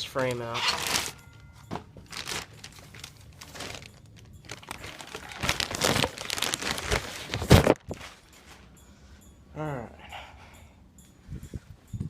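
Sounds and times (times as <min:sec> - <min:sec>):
packaging crinkling and rustling: 0:00.6 - 0:08.3.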